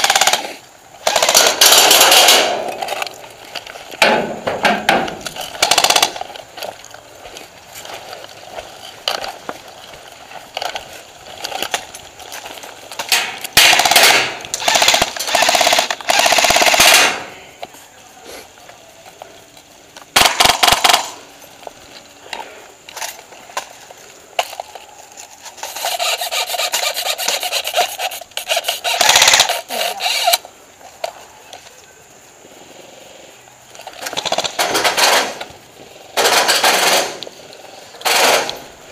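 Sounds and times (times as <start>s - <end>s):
airsoft guns firing bursts: 0.0s - 2.6s, 5.6s - 6.2s, 13.2s - 17.3s, 20.2s - 21.2s, 28.5s - 30.4s.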